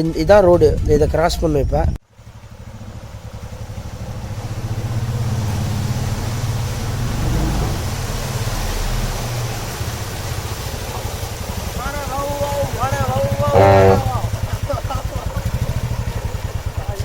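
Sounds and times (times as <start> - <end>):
motorcycle engine running: 2.1 - 6.4, 13.0 - 17.0.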